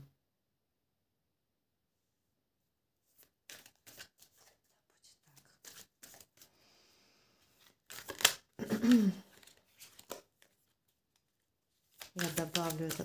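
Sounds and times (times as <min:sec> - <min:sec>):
cards being shuffled: 0:03.1 - 0:04.7, 0:05.4 - 0:06.5, 0:07.5 - 0:13.0.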